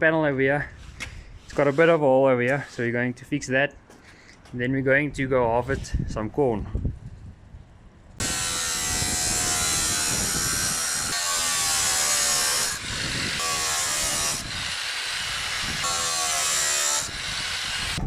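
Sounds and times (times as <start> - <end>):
power tool cutting sheet metal: 8.2 - 18.0.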